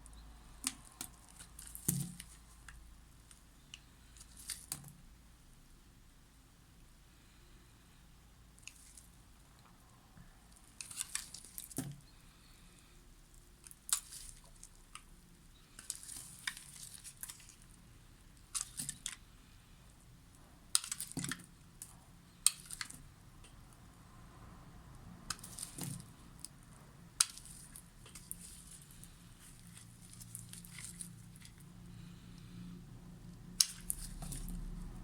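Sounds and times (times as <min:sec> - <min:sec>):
knife cutting soap: 0:13.6 - 0:19.6, 0:25.2 - 0:26.6, 0:27.2 - 0:32.1, 0:33.6 - 0:34.8.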